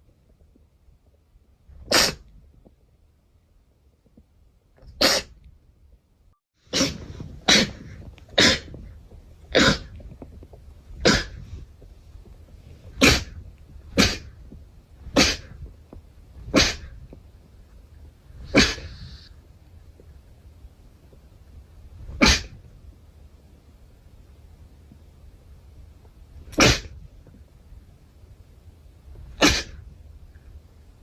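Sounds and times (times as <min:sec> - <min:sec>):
short sharp sneezes: 0:01.9 - 0:02.2, 0:05.0 - 0:05.4, 0:06.7 - 0:07.8, 0:08.4 - 0:08.7, 0:09.6 - 0:09.9, 0:11.0 - 0:11.4, 0:13.0 - 0:13.4, 0:14.0 - 0:14.3, 0:15.1 - 0:15.6, 0:16.4 - 0:16.9, 0:18.4 - 0:19.3, 0:22.1 - 0:22.6, 0:26.5 - 0:27.0, 0:29.2 - 0:29.8.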